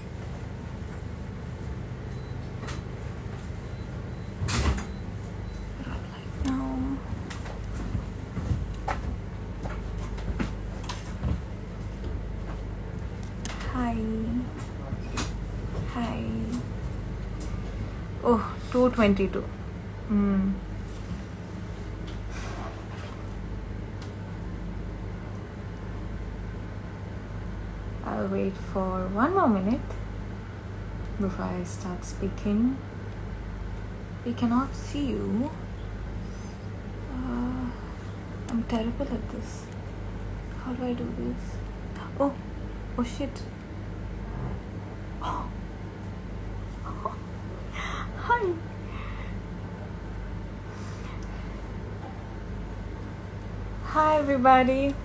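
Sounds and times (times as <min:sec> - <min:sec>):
low background hum: 0:00.0 - 0:55.0
low hum: 0:28.0 - 0:55.0.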